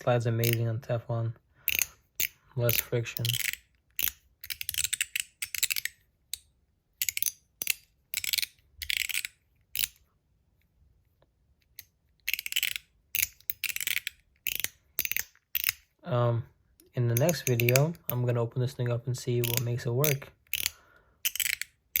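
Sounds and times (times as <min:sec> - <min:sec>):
metal slider clacking: 0:17.1 - 0:18.2, 0:19.4 - 0:22.0
metal slider rasping: 0:17.1 - 0:18.2, 0:19.4 - 0:22.0.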